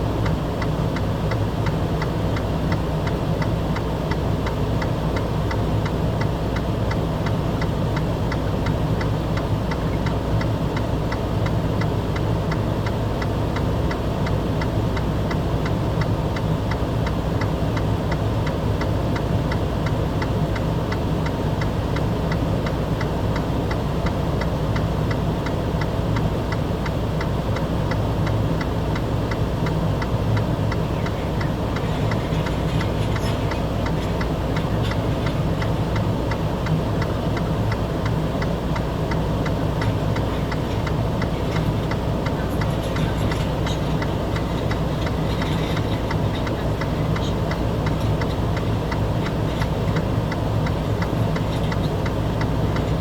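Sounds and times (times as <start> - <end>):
engine idling: 0.0 - 53.0
fast even ticking: 27.9 - 53.0.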